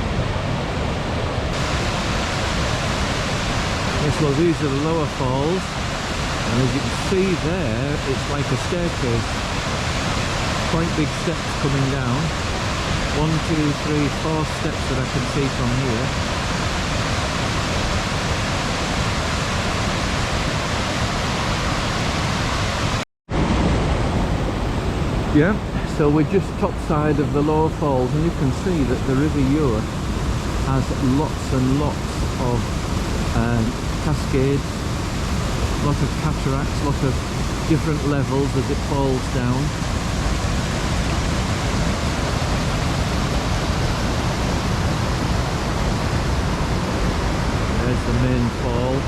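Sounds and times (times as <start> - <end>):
waterfall pouring over rocks: 1.5 - 18.0, 26.9 - 39.8.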